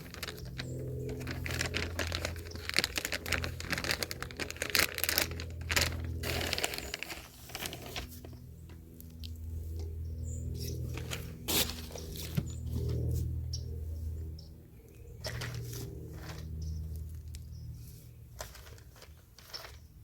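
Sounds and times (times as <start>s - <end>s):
plastic bag crinkling and tearing: 0.0s - 8.4s.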